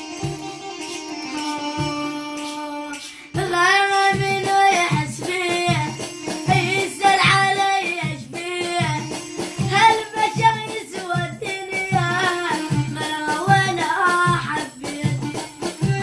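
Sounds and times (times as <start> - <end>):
plucked string instrument: 0.0 - 16.0
steady drum beat: 0.0 - 16.0
child singing: 1.3 - 16.0.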